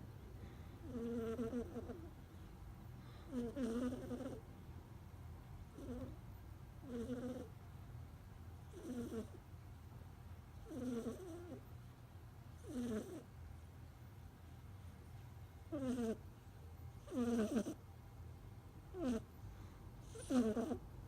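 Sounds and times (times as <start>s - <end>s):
low steady hum: 0.0s - 21.0s
cat snoring: 0.8s - 2.1s, 3.1s - 4.5s, 5.7s - 6.2s, 6.8s - 7.5s, 8.7s - 9.4s, 10.6s - 11.7s, 12.6s - 13.3s, 15.7s - 16.2s, 17.0s - 17.8s, 18.9s - 19.3s, 20.0s - 20.8s.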